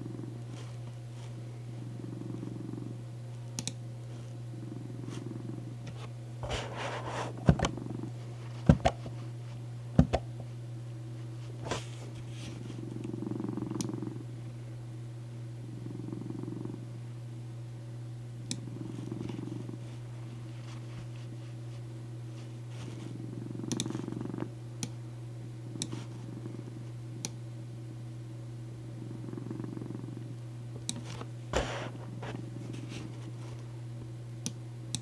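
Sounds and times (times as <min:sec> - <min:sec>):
cat purring: 0:00.0 - 0:03.2, 0:04.1 - 0:09.3, 0:11.6 - 0:14.3, 0:15.7 - 0:17.0, 0:18.6 - 0:24.6, 0:25.6 - 0:27.3, 0:28.8 - 0:33.7.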